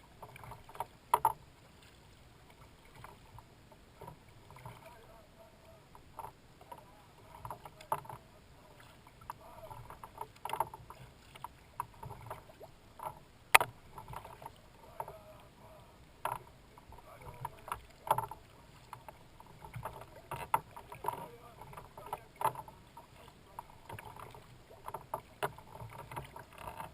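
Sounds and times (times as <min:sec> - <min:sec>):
paddle splashing in water: 0:00.0 - 0:26.9.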